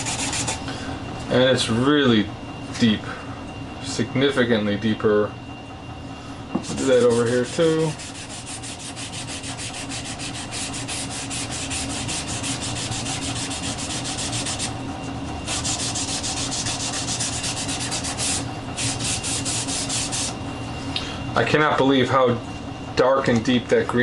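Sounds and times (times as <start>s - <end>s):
rag rubbing on wood: 0.0s - 0.6s, 6.6s - 14.8s, 15.5s - 20.4s.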